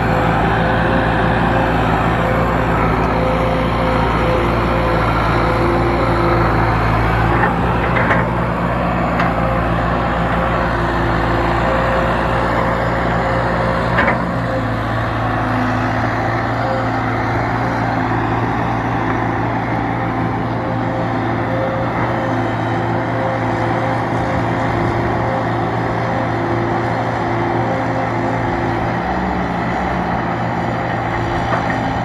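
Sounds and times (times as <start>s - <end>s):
diesel engine running under load: 0.0s - 32.0s.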